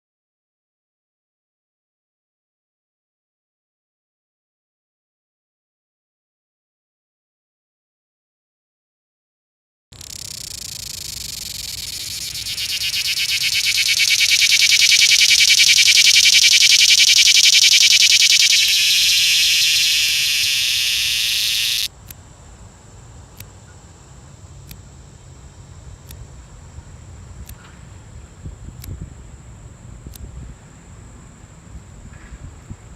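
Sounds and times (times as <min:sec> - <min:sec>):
cicada buzzing: 0:10.0 - 0:22.0.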